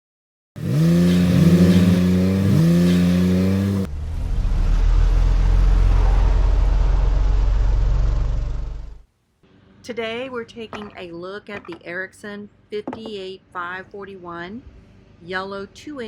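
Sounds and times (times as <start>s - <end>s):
car engine accelerating: 0.6s - 9.0s
low engine rumble: 3.8s - 9.1s.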